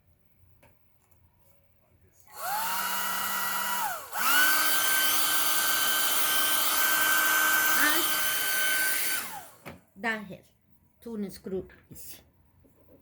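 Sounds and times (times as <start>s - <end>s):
hair dryer motor whine: 2.3s - 9.8s.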